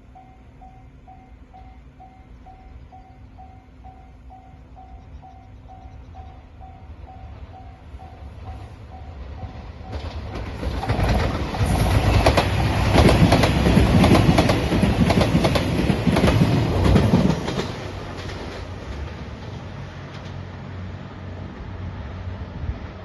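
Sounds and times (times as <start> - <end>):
train passing at speed: 0.0 - 23.0
wheels clacking over rail joints: 7.3 - 20.6.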